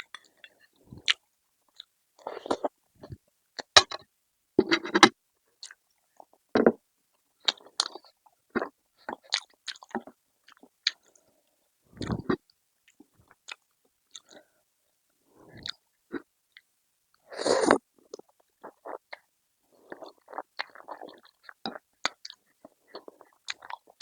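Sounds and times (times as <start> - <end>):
person chewing food: 0.0 - 3.2, 7.4 - 11.2, 12.0 - 14.5, 18.1 - 24.0.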